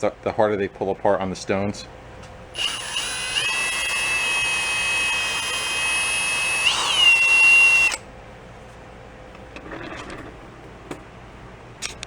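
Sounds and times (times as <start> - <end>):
electric drill motor whine: 2.6 - 8.0.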